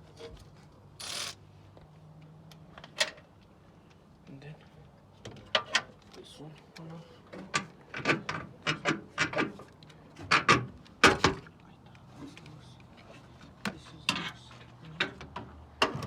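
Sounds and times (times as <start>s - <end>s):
tools and metal parts clicking: 1.0s - 1.4s.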